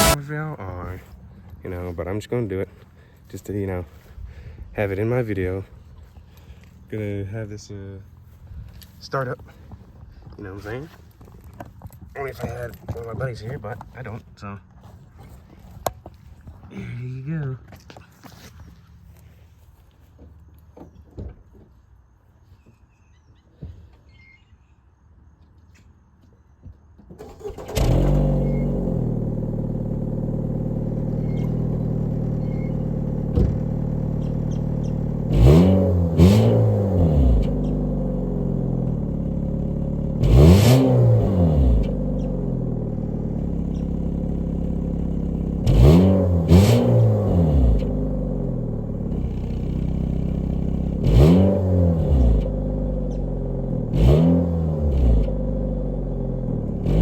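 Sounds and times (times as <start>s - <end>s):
car engine idling and revving: 0.0s - 10.8s, 27.2s - 57.0s.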